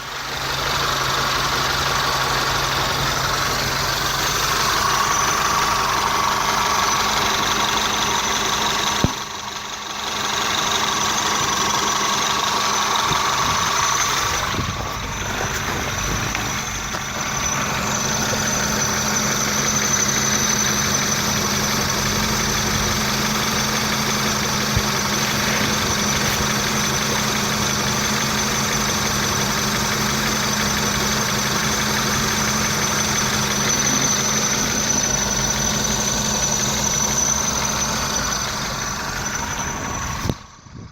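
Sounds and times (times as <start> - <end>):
car engine idling: 0.0 - 40.9
high-pitched pulley whistle: 17.2 - 40.9.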